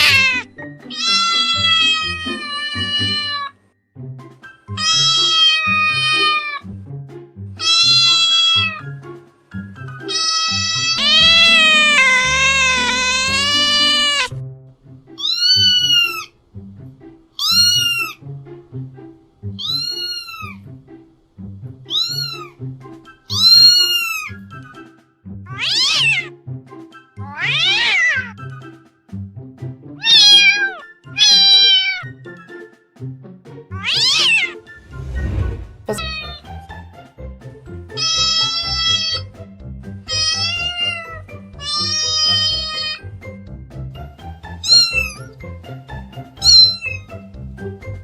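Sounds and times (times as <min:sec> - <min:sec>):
cat meowing: 0:00.0 - 0:03.6, 0:04.8 - 0:06.6, 0:07.6 - 0:08.9, 0:10.0 - 0:14.3, 0:15.2 - 0:16.3, 0:17.4 - 0:18.2, 0:19.6 - 0:20.6, 0:21.9 - 0:22.6, 0:23.3 - 0:24.4, 0:25.5 - 0:26.3, 0:27.2 - 0:28.3, 0:30.0 - 0:32.1, 0:33.7 - 0:34.6, 0:35.9 - 0:36.6, 0:38.0 - 0:39.3, 0:40.1 - 0:43.0, 0:44.6 - 0:45.3, 0:46.4 - 0:47.1
background music: 0:00.0 - 0:48.0.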